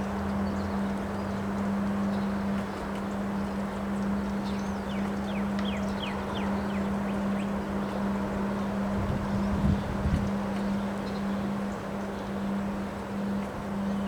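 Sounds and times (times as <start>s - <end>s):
constant low hum: 0.0s - 14.0s
strong wind blowing: 9.0s - 10.4s.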